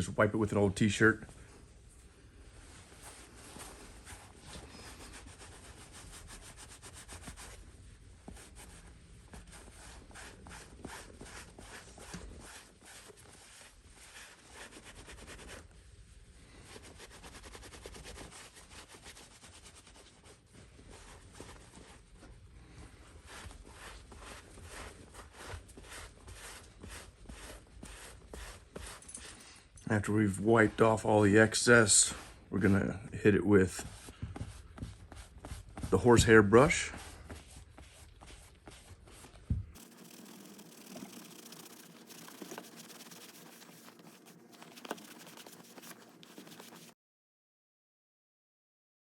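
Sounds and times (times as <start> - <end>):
rag rubbing on leather: 3.0 - 15.8, 23.1 - 29.4, 33.6 - 47.0.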